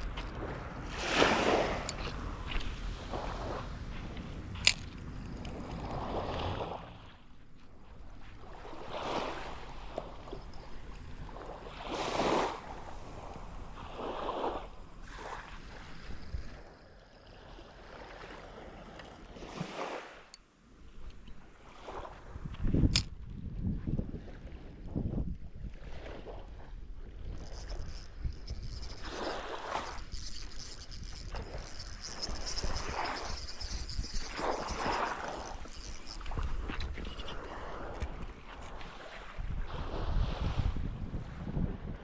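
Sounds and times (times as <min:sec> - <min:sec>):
seawater washing in and out: 0:00.0 - 0:23.1, 0:25.9 - 0:40.4
wind on the microphone: 0:20.9 - 0:42.0
sharp click: 0:22.8 - 0:23.1.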